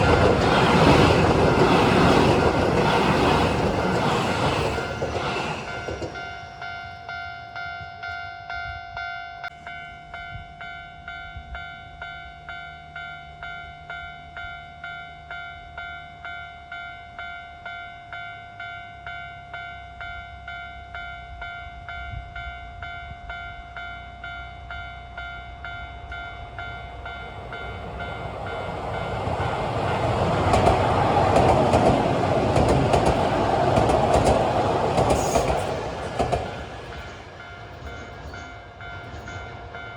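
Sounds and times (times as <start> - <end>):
electric train running past: 0.0 - 11.2, 24.7 - 39.9
level crossing warning bell ringing: 0.0 - 17.4, 23.3 - 39.9.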